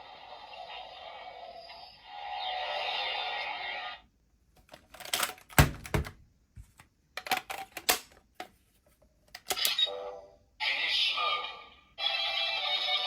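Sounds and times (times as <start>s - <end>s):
plastic toy clicking: 7.2s - 8.2s, 9.4s - 9.8s.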